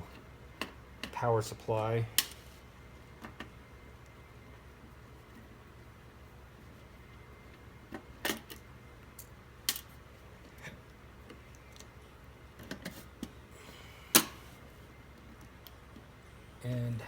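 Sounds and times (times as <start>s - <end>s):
clicks and knocks of parts handled: 7.9s - 10.6s, 12.6s - 13.3s.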